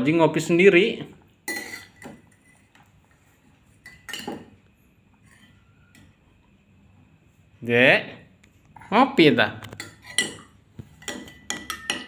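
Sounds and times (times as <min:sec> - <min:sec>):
spoon clinking on coffee cup: 0:09.8 - 0:12.0.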